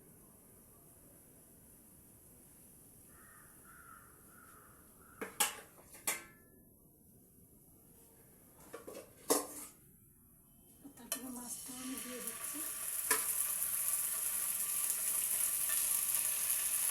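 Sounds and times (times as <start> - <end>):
crow cawing faintly: 3.1 - 5.6.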